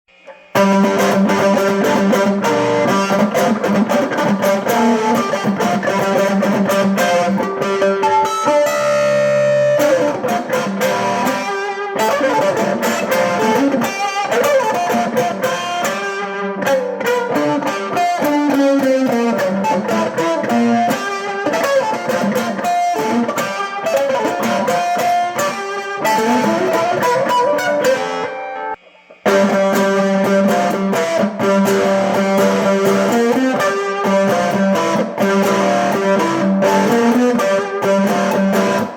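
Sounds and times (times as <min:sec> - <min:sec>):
fuzzy electric mandolin licks: 0:00.1 - 0:38.9.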